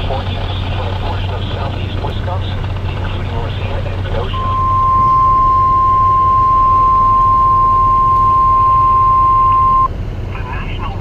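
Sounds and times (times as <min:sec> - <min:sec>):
steady single-pitch alarm tone: 0:04.3 - 0:09.9.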